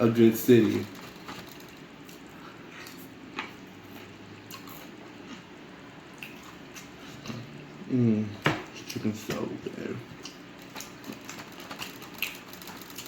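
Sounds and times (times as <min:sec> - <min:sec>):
wet chewing mouth sounds: 0:02.0 - 0:07.7
small crunches while chewing: 0:10.1 - 0:13.0.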